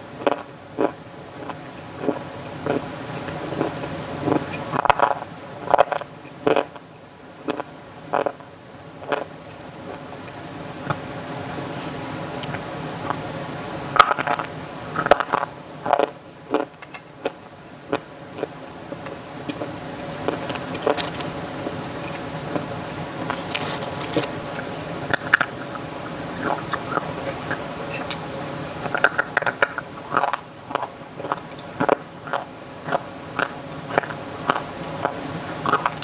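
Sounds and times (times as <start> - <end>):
steady hum: 0.0 - 36.0.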